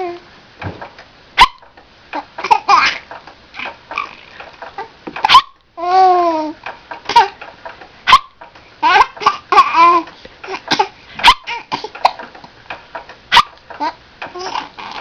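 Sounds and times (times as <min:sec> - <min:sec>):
baby laughing and babbling: 0:00.0 - 0:00.3, 0:02.2 - 0:03.1, 0:04.8 - 0:07.4, 0:08.8 - 0:12.2, 0:13.8 - 0:15.0.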